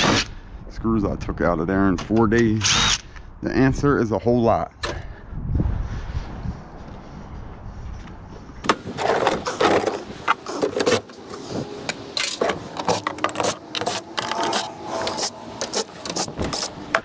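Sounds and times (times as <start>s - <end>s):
metal parts clicking and clinking: 12.1s - 16.8s.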